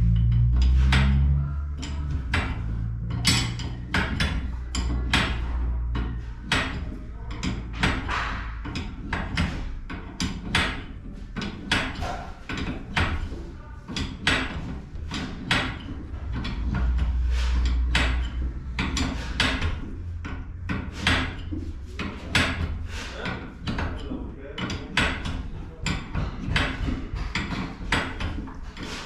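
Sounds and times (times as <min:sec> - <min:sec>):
low rumble: 0:00.0 - 0:11.2, 0:14.6 - 0:24.6
knocks and clanks on metal hardware: 0:00.0 - 0:29.0.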